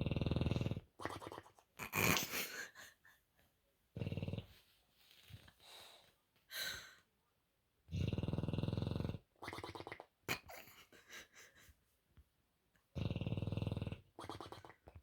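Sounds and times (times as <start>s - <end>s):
dog snoring: 0.0s - 0.9s, 1.8s - 2.4s, 4.0s - 4.6s, 7.9s - 9.9s, 12.9s - 14.6s.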